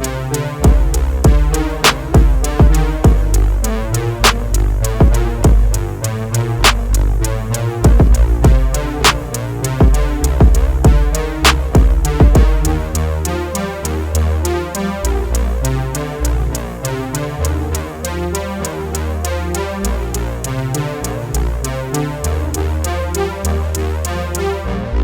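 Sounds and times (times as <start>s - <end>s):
drum machine beat: 0.0s - 13.2s
heavy bass: 0.0s - 25.0s
synthesizer: 0.0s - 25.0s.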